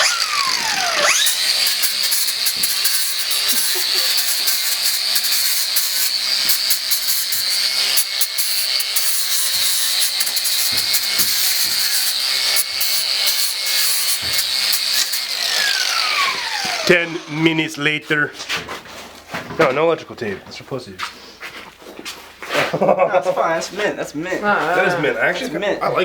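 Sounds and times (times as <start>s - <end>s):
filing metal: 0.0s - 17.8s.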